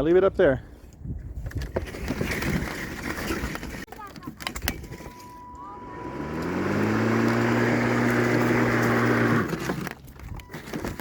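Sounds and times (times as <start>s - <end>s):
leaf blower engine: 5.5s - 10.0s.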